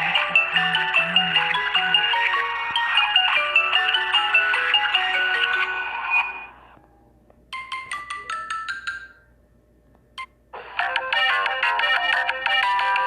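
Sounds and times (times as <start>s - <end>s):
phone ringtone melody: 0.0s - 6.6s, 7.5s - 9.3s, 10.6s - 13.0s.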